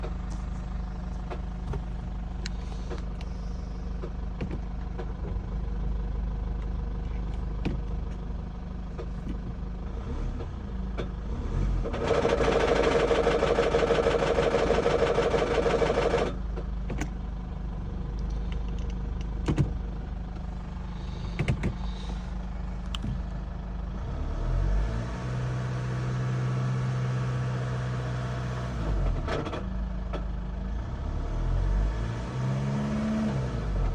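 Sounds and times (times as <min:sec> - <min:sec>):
engine knock clicks: 0:00.0 - 0:05.8, 0:06.5 - 0:08.3, 0:08.9 - 0:09.7, 0:11.9 - 0:17.3, 0:18.0 - 0:23.4
steady low hum: 0:00.0 - 0:11.1, 0:16.1 - 0:23.4
car engine running: 0:00.0 - 0:33.9.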